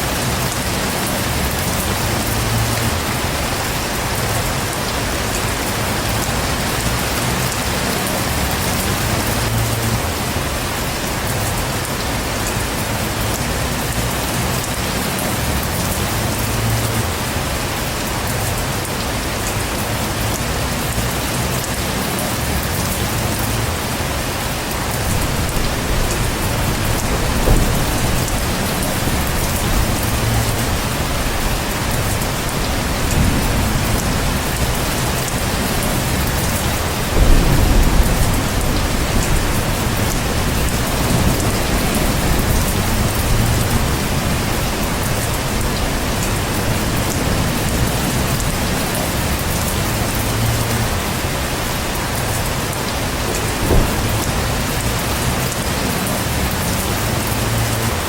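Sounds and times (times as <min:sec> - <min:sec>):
heavy rain pouring: 0:00.0 - 0:58.0
thunder rumbling: 0:22.3 - 0:58.0.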